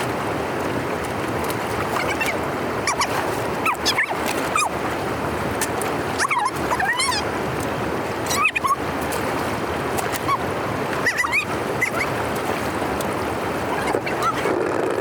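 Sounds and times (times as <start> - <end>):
floodwater rushing: 0.0 - 15.0
squeaky animal cries: 11.0 - 12.1.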